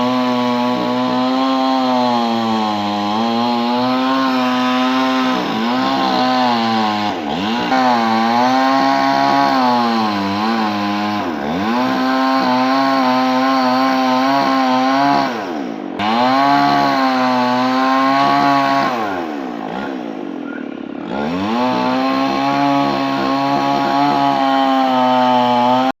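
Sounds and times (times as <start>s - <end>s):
two-stroke chainsaw running: 0.0s - 26.0s.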